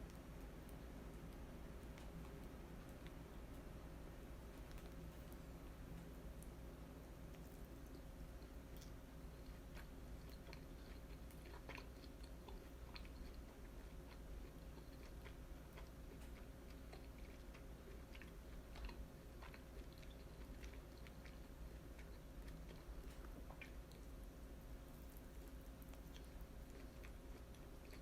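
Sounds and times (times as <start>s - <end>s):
faint steady hum: 0.0s - 28.0s
person chewing food: 0.0s - 28.0s.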